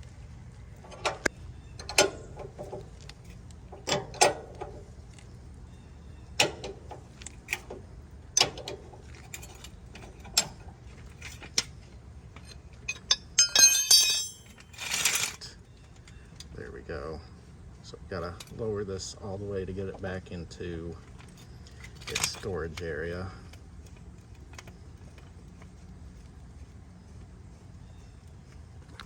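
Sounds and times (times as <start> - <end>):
vehicle jack metal clicks: 0.8 - 2.9, 3.7 - 4.8, 6.4 - 7.8, 8.4 - 10.7
jangling metallic rattle: 12.9 - 15.4.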